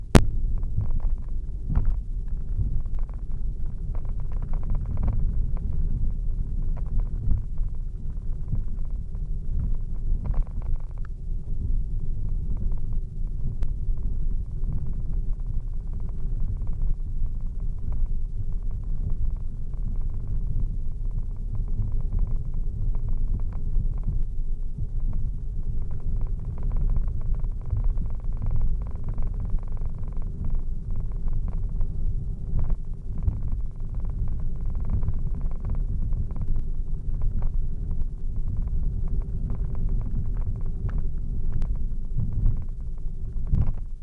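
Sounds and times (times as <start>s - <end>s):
faint constant hum: 0.0s - 44.0s
light ticks: 0.1s - 11.6s, 12.2s - 44.0s.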